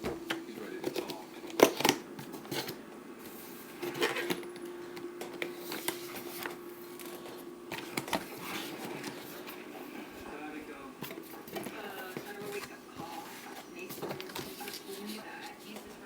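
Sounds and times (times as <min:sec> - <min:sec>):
faint steady hum: 0:00.0 - 0:16.0
packaging and plastic parts rustling: 0:03.8 - 0:09.6.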